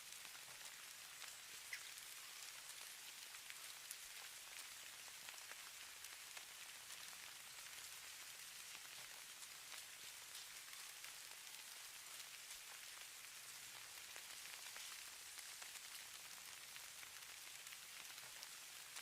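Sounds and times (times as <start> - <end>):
faint high hiss: 0.0 - 12.8
tiny ticks of snowflakes landing: 0.2 - 18.8.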